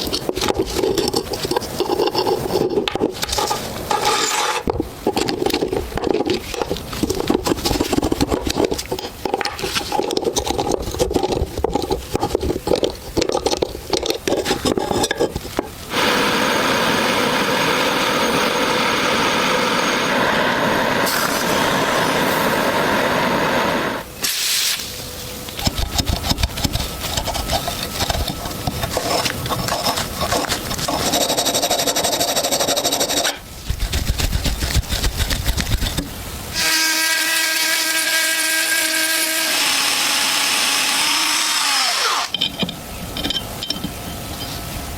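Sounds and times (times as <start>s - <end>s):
scraping and rubbing on metal: 0.0s - 15.8s, 25.4s - 36.2s
power tool hiss: 15.9s - 25.5s.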